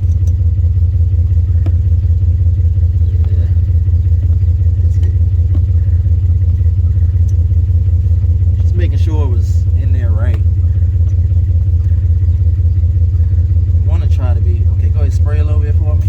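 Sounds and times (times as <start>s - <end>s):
faint clicks: 0.0s - 0.5s, 6.5s - 7.5s, 10.3s - 12.0s
motor humming with fast pulse: 0.0s - 16.0s.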